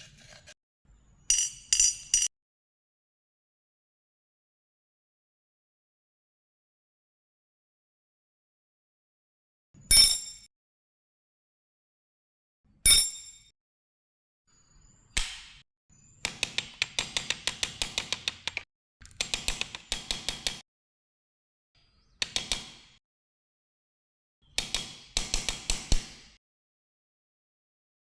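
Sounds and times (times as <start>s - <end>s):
metal parts clinking: 1.3s - 2.3s.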